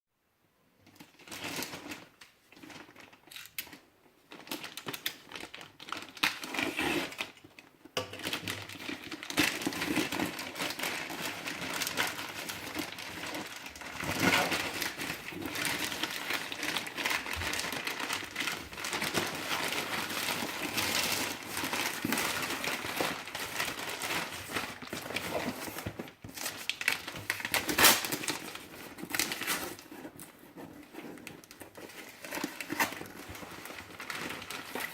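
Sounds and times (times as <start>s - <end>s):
packaging crinkling and rustling: 0.8s - 34.9s.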